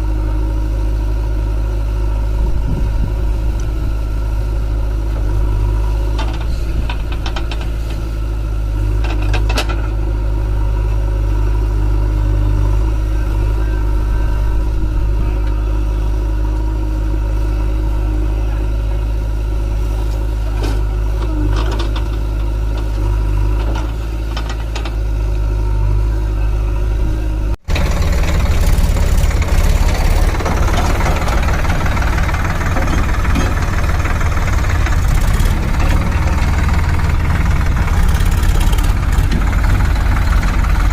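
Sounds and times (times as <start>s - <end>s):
heavy machine engine humming: 0.0s - 40.9s
metal knocks and clanks: 32.6s - 40.2s.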